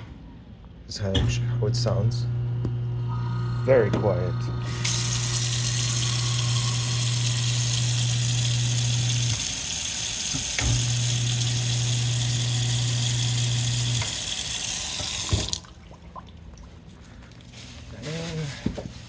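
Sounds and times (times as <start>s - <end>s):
garbage disposal motor hum: 0.9s - 17.8s
tap water running into sink: 4.0s - 16.3s.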